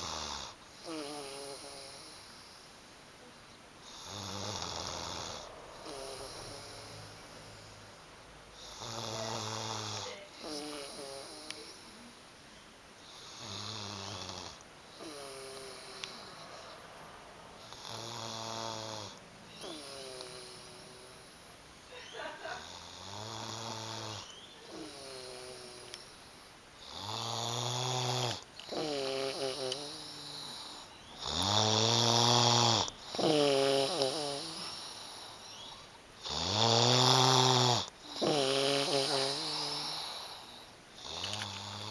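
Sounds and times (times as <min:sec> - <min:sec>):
man snoring: 0:00.0 - 0:02.6, 0:03.8 - 0:07.9, 0:08.6 - 0:12.0, 0:13.0 - 0:21.5, 0:22.6 - 0:35.6, 0:36.2 - 0:41.9.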